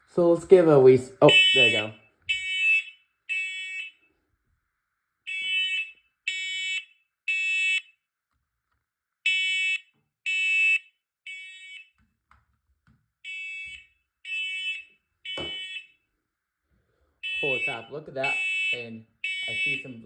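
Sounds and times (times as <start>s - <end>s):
smoke alarm beeping: 1.2s - 4.0s, 5.3s - 8.0s, 9.3s - 11.9s, 13.2s - 16.0s, 17.2s - 20.0s.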